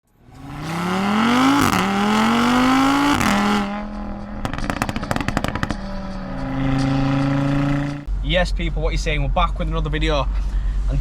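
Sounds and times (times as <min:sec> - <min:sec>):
car engine accelerating hard: 0:00.1 - 0:08.1
exhaust pops and crackles: 0:01.5 - 0:08.1.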